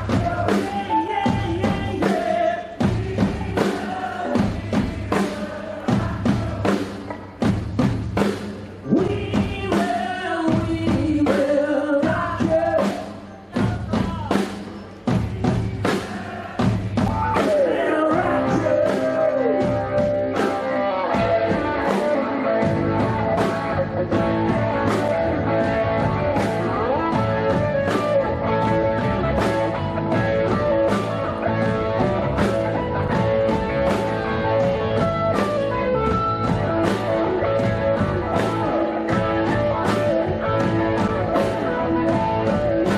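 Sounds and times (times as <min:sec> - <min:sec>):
rock band playing: 0:00.0 - 0:42.9.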